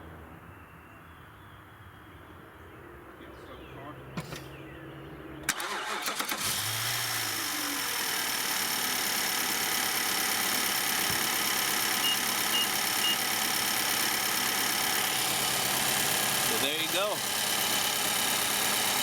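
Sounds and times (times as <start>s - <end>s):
car engine starting and idling: 3.9s - 19.0s.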